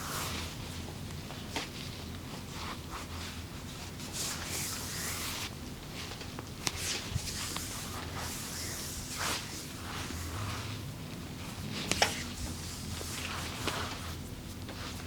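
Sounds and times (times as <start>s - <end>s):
steady low hum: 0.0s - 15.0s
hands rubbing over skin: 6.8s - 10.5s.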